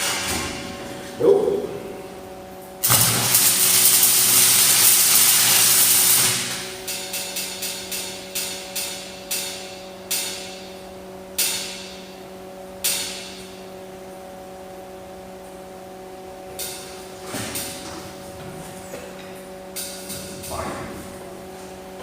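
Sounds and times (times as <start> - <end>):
welding arc crackling: 0.0 - 0.6, 2.6 - 12.2, 16.4 - 17.8.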